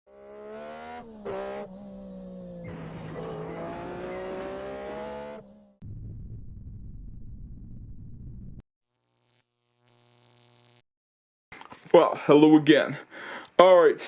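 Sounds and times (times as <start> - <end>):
car engine at high revs: 0.1 - 5.8
low rumble: 5.8 - 8.6.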